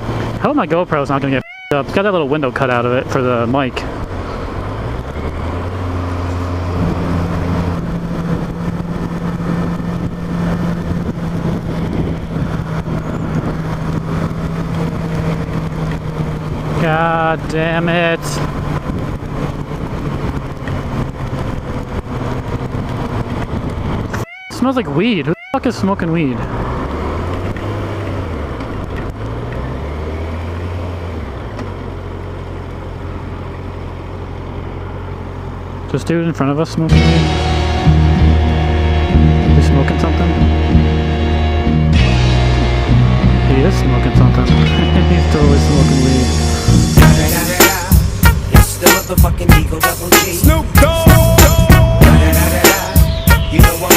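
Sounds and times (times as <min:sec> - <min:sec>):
wind and road noise: 0:00.0 - 0:53.9
motorcycle engine running: 0:01.4 - 0:24.2, 0:36.9 - 0:53.9.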